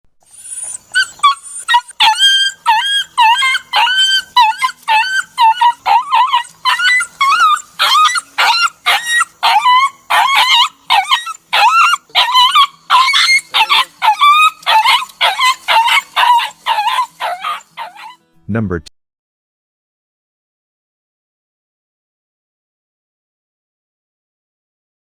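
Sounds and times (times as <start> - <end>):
dog yelping and whimpering: 0.2 - 18.2.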